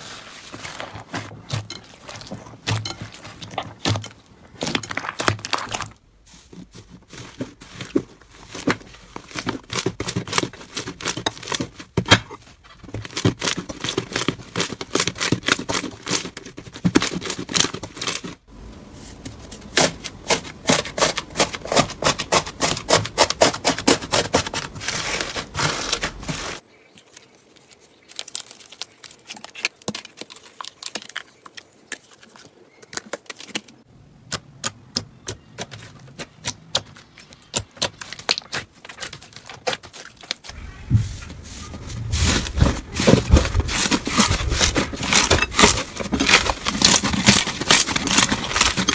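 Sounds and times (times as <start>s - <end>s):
slime clicking and crackling: 28.0s - 40.4s.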